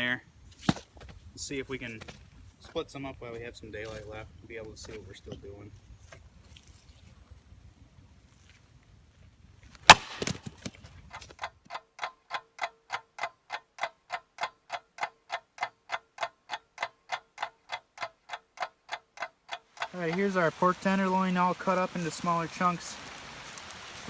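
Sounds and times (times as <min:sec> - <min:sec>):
axe striking firewood: 0:00.6 - 0:01.2, 0:09.8 - 0:11.4
even ticking: 0:11.1 - 0:22.3.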